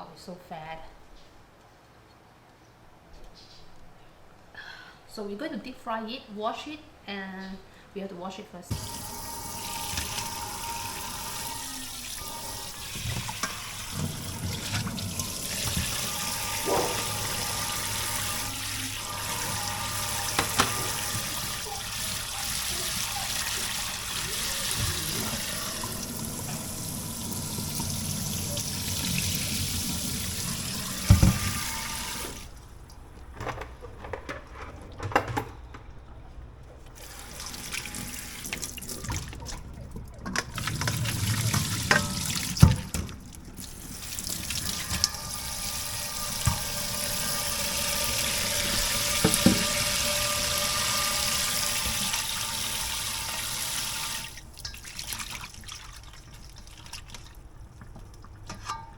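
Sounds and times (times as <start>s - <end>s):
tap running into a sink: 8.7s - 32.4s, 40.2s - 43.2s, 44.0s - 54.2s.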